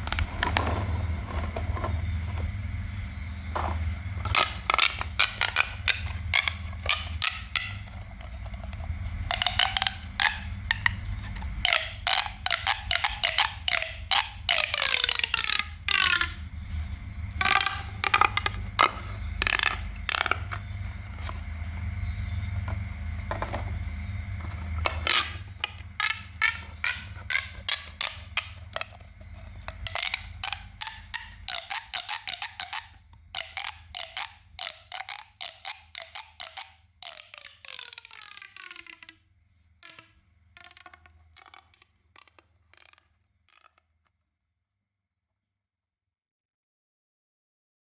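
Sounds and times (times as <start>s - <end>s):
low steady hum: 0.0s - 43.5s
pop toy popping: 4.2s - 16.4s, 17.4s - 20.7s, 24.8s - 39.2s, 39.8s - 44.0s.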